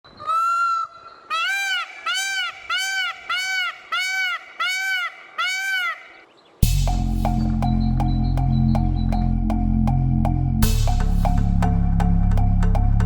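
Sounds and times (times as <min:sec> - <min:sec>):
peacock calling: 0:00.1 - 0:09.6.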